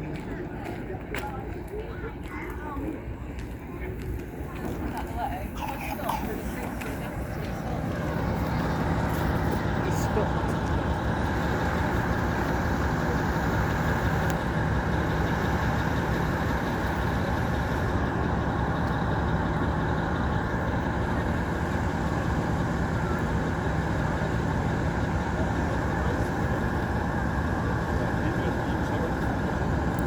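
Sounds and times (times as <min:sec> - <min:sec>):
excavator diesel engine running: 0:00.0 - 0:30.0.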